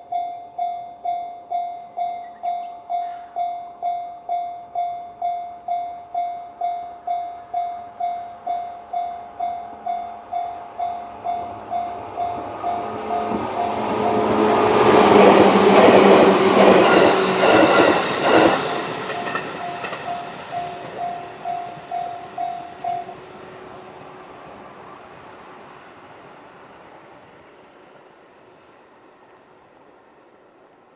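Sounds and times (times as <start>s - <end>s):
electronic level crossing bell: 0.0s - 13.8s
train wheels clattering over rail joints: 13.2s - 22.1s.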